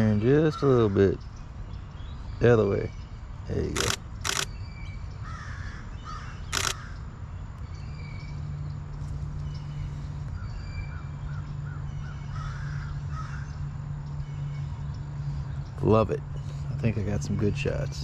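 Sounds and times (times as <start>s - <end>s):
birds calling: 0.0s - 18.0s
low steady hum: 0.0s - 18.0s
camera shutter click: 3.7s - 4.5s, 6.4s - 6.8s.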